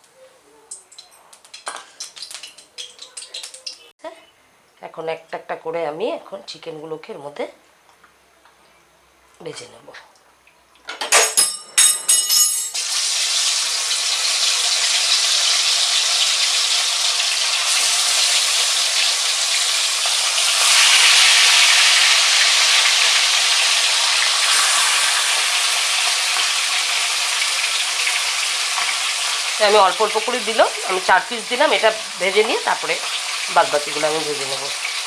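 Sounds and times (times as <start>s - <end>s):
chicken sizzling in hot oil: 0.9s - 3.9s, 12.8s - 35.0s.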